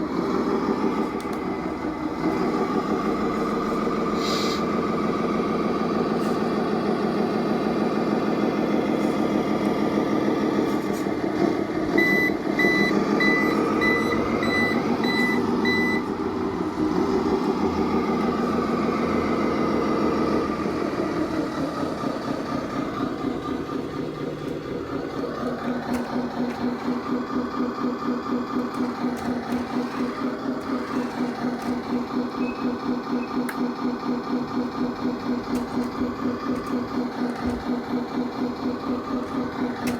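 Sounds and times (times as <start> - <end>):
simulated diesel engine: 0.0 - 39.9
reversing alarm beeping: 11.9 - 16.1, 32.2 - 33.5.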